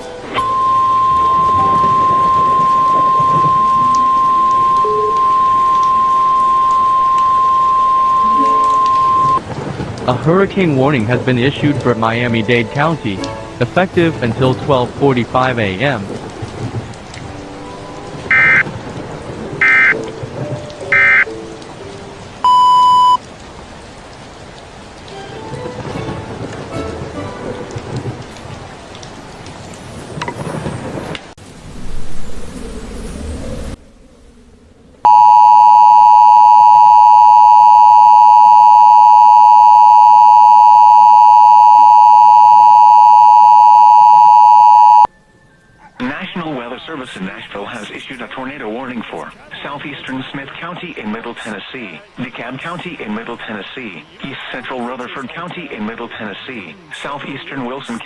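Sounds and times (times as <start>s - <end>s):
rain: 0.0s - 58.0s
buzzy beep: 0.3s - 9.4s, 18.3s - 18.6s, 21.0s - 21.2s, 35.1s - 45.1s
digital data tone bursts: 0.3s - 9.4s, 18.3s - 18.6s, 20.9s - 21.2s, 35.1s - 45.1s.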